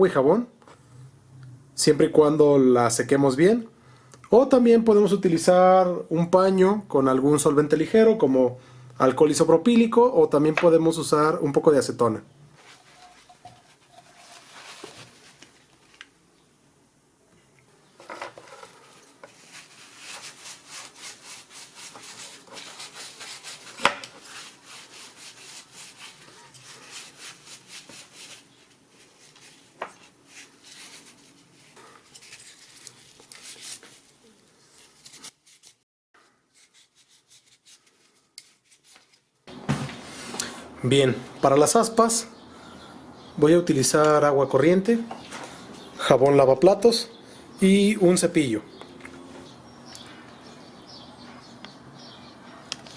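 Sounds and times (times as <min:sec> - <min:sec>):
cloth wiping plastic: 0:12.5 - 0:16.1, 0:18.5 - 0:35.8, 0:36.5 - 0:39.2.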